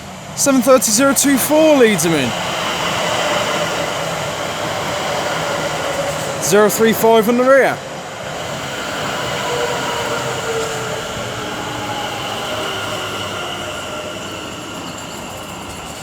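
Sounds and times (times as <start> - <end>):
electric train slowing: 0.0 - 16.0
faint whining tones: 7.8 - 16.0.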